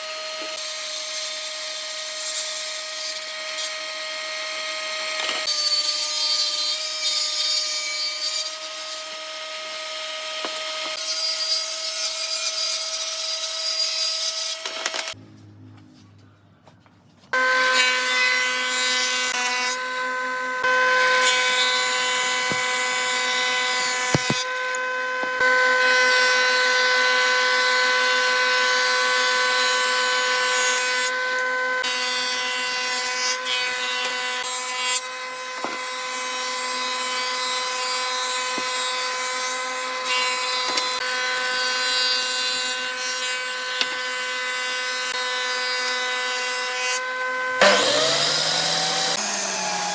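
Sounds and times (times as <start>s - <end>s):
power tool cutting wood: 0.0s - 15.2s, 17.3s - 49.9s.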